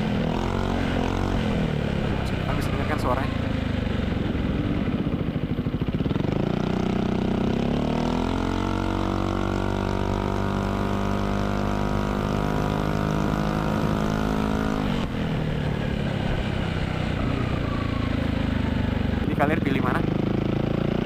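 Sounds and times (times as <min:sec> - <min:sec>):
scooter engine revving: 0:00.0 - 0:21.0.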